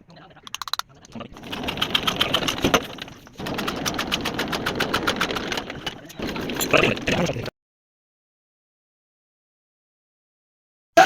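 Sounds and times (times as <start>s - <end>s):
old diesel engine knocking: 1.4s - 7.4s.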